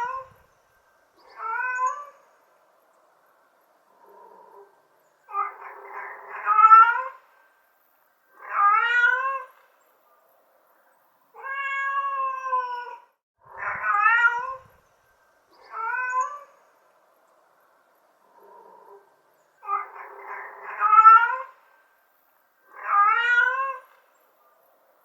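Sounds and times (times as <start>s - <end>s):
cat meowing: 0.0s - 0.4s, 1.3s - 2.2s, 5.3s - 7.2s, 8.4s - 9.6s, 11.4s - 14.7s, 15.6s - 16.5s, 19.6s - 21.6s, 22.7s - 23.9s.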